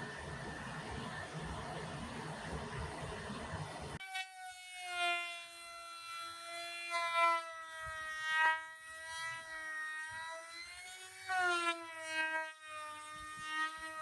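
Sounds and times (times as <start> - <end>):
small electric motor whining: 4.0 - 14.0.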